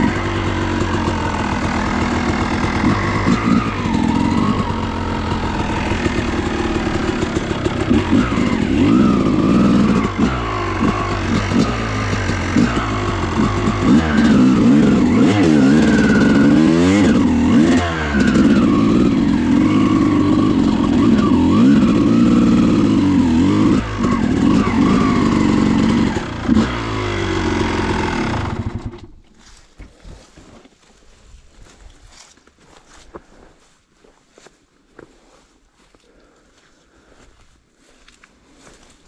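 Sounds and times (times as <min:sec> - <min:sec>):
two-stroke motorcycle engine revving: 0:00.0 - 0:29.2.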